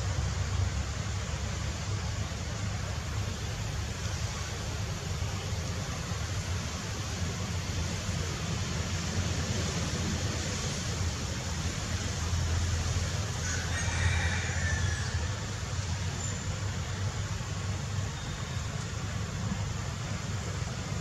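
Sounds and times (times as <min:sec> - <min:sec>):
low outdoor rumble: 0:00.0 - 0:21.0.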